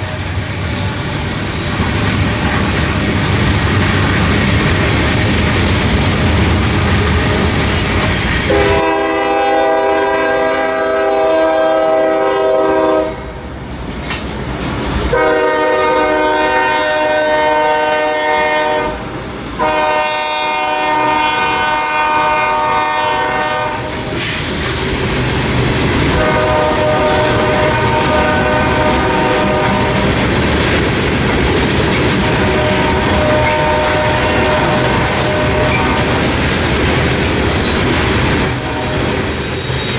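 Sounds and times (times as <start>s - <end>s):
train wheels clattering on rails: 0.0s - 39.9s
locomotive air horn blasts: 6.8s - 13.2s, 15.1s - 19.0s, 19.6s - 24.0s, 26.1s - 30.1s, 32.3s - 36.2s.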